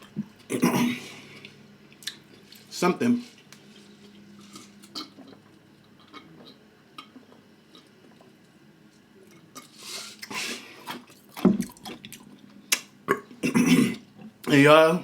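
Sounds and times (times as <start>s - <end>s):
quiet chewing: 1.2s - 2.7s, 3.3s - 12.9s.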